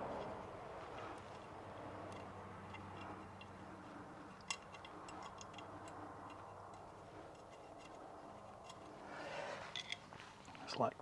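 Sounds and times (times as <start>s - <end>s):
clicks of small parts and hand tool: 4.2s - 9.0s, 9.6s - 10.2s.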